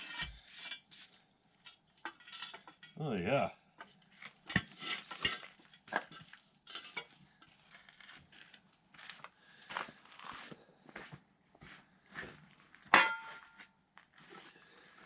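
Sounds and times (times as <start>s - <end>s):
metal jacks clinking and rattling: 2.0s - 3.0s.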